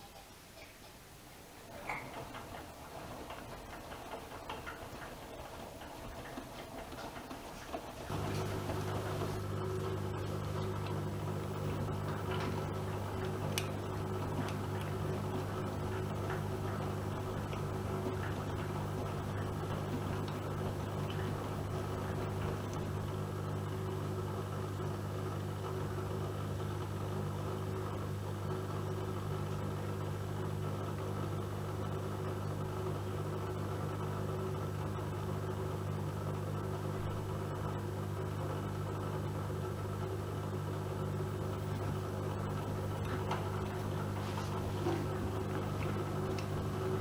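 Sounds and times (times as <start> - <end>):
washing machine humming: 1.4 - 47.0
faint clicks: 10.6 - 22.9.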